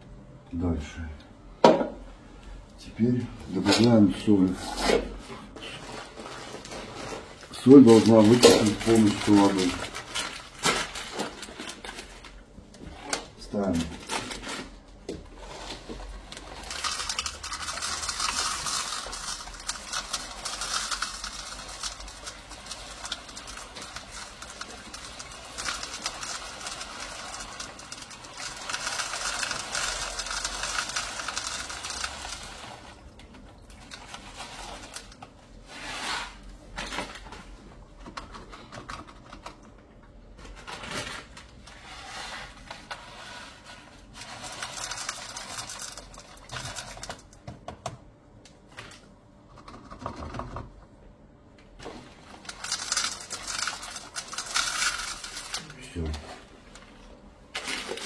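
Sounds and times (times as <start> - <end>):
salt granules pouring: 6.1 - 11.4, 15.4 - 33.1, 41.8 - 47.3, 51.9 - 56.1.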